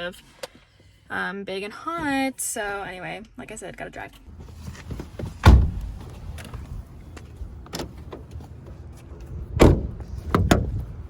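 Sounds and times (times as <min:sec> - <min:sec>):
car doors shutting: 0:04.4 - 0:06.8, 0:09.6 - 0:10.8.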